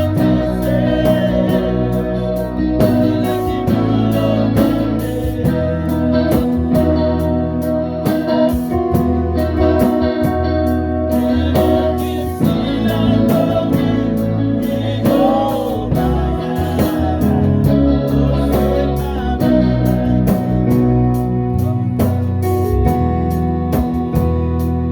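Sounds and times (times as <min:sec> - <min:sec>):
person singing: 0:00.0 - 0:07.4, 0:11.1 - 0:22.4
bass guitar: 0:00.0 - 0:24.9
electric guitar: 0:00.0 - 0:24.9
keyboard: 0:00.0 - 0:24.9.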